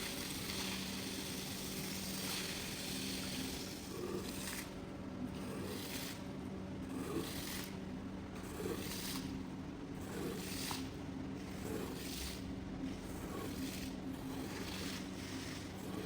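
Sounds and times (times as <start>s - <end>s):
steady low hum: 3.5s - 16.0s.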